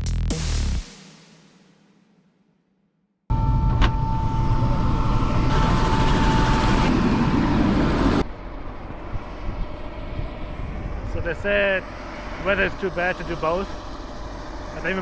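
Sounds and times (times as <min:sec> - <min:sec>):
helicopter drone with whine: 0:03.3 - 0:15.0.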